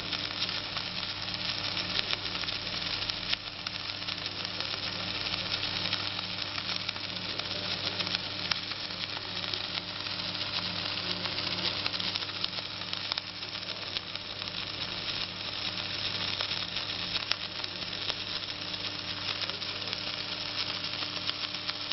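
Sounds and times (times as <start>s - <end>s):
electrical hum: 0.0s - 21.9s
welding arc sizzling: 0.0s - 21.9s.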